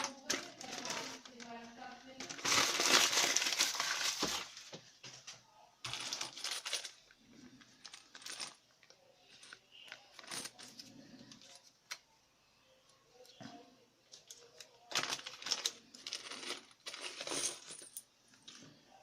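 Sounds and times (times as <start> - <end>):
packaging rustling: 0.0 - 1.5, 2.2 - 4.7.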